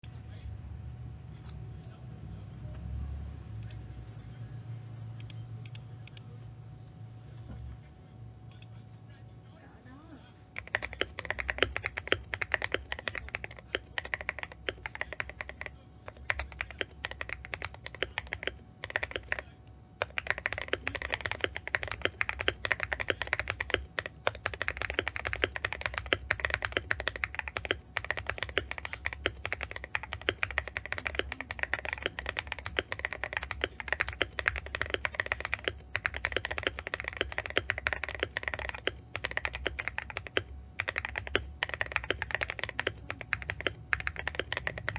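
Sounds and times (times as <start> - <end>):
mechanical keyboard typing clatter: 10.6 - 44.9.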